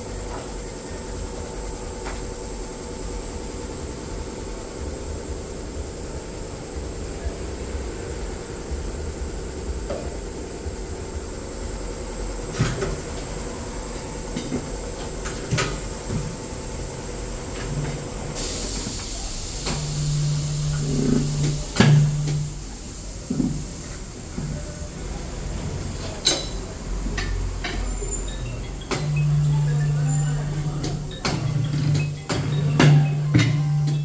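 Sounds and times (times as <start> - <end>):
hiss: 18.3 - 24.2
low motor hum: 19.6 - 23.8.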